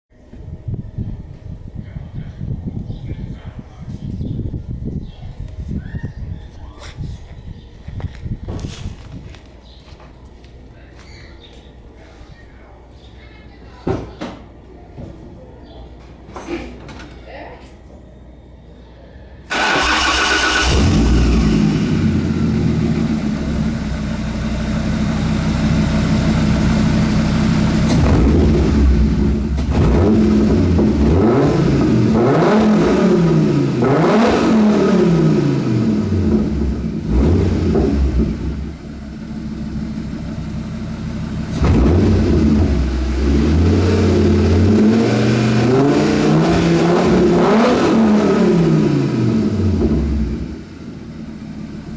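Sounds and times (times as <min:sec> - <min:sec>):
car engine starting and revving: 0:19.5 - 0:51.9.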